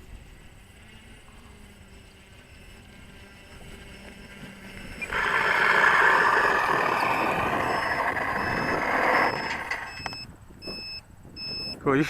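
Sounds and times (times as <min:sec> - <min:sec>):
short high beeps: 0:05.8 - 0:11.8.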